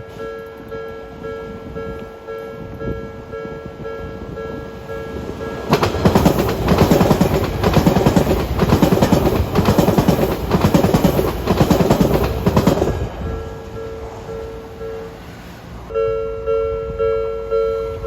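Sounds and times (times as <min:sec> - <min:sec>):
level-crossing warning bell: 0:00.0 - 0:05.8, 0:13.0 - 0:15.3, 0:15.9 - 0:18.0
train wheels clattering over rails: 0:05.1 - 0:14.8.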